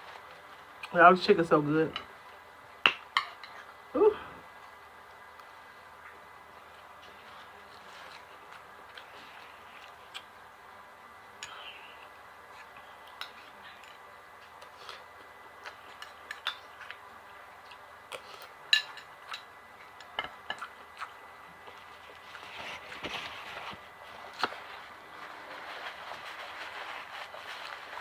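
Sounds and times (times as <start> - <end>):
chewing: 5.4 - 10.3, 11.4 - 17.0, 17.6 - 28.0.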